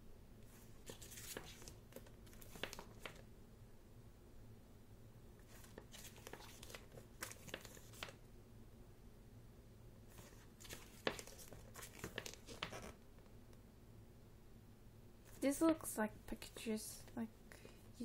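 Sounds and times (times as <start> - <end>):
book pages turning: 0.5 - 3.2, 5.4 - 8.2, 10.1 - 13.0.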